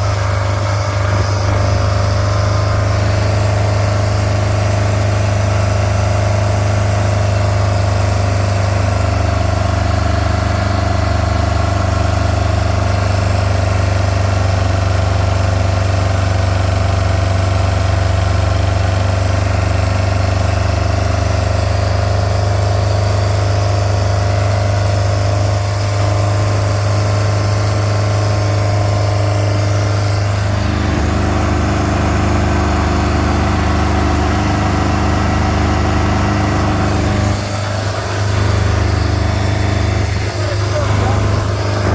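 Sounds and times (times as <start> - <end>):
boat engine idling: 0.0 - 41.9.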